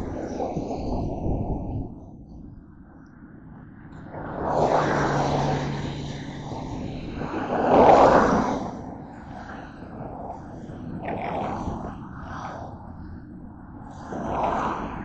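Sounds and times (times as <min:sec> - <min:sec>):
low engine hum: 0:03.6 - 0:15.0.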